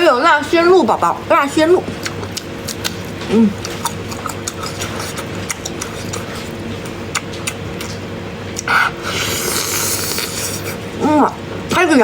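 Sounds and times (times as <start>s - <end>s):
steady background hum: 0.0s - 12.0s
wet chewing clicks: 1.8s - 10.8s.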